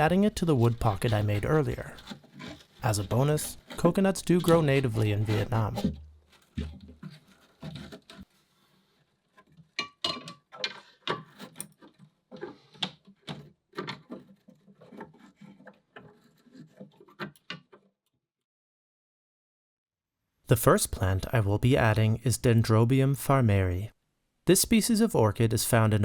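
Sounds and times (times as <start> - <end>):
dry fibre rustling and crackling: 0.0 - 9.8.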